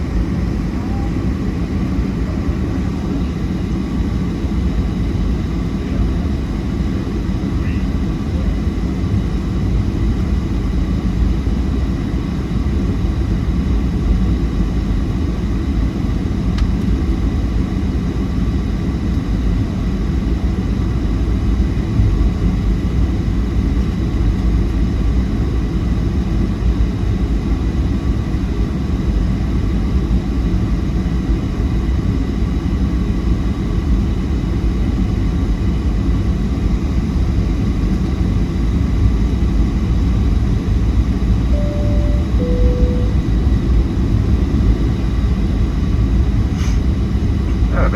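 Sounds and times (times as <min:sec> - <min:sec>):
jet engine rumble in cabin: 0:00.0 - 0:47.9
faint steady high tones: 0:41.5 - 0:43.8.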